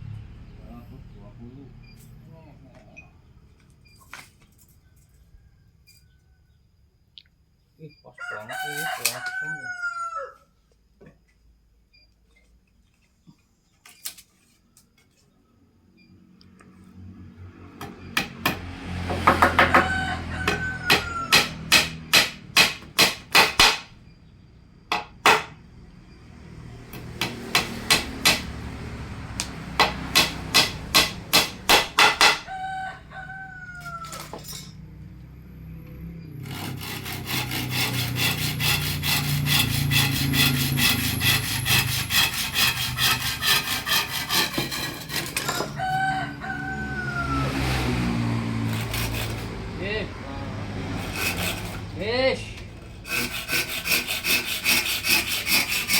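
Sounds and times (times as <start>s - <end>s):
rooster crowing: 8.1s - 10.6s, 19.4s - 22.1s, 32.2s - 34.8s, 45.4s - 49.3s
hammer blows on wood: 18.2s - 23.9s.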